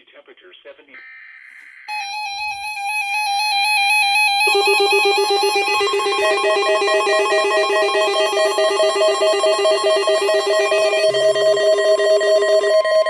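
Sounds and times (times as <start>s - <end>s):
data tones: 1.9s - 13.0s
trilling electronic melody: 1.9s - 13.0s.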